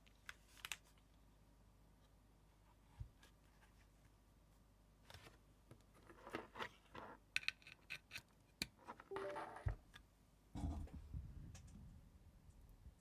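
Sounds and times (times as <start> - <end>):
keyboard scraping on hard surface: 9.1 - 9.8.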